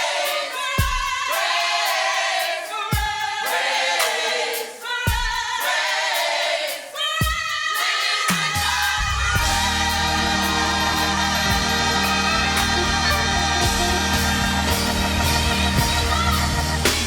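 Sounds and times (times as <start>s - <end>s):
youth choir singing gospel: 0.0s - 17.0s
bass drum hits: 9.2s - 17.0s.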